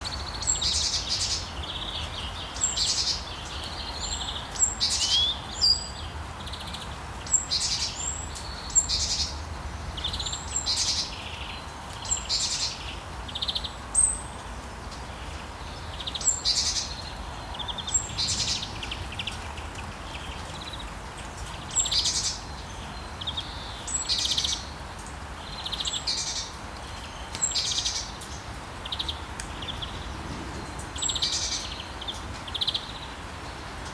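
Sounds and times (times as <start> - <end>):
light rain hiss: 0.0 - 33.9
small birds chirping: 0.0 - 33.9
wind rumble: 17.0 - 21.8, 28.4 - 33.9.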